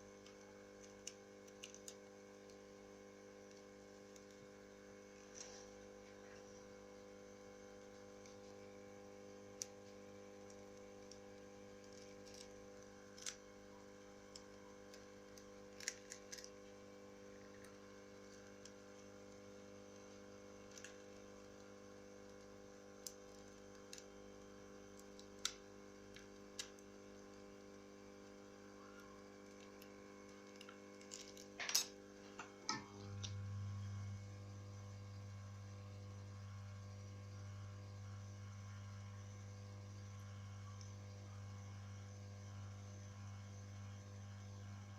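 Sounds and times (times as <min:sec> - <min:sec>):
electrical hum: 0:00.0 - 0:44.9
small tools clicking and tapping: 0:30.5 - 0:33.3.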